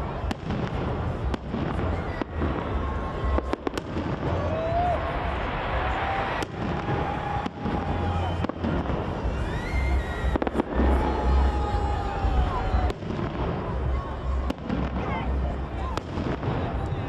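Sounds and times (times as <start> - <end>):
fireworks bangs: 0.0 - 17.0
fireworks crackling: 0.0 - 17.0
fireworks whistling: 6.2 - 11.5.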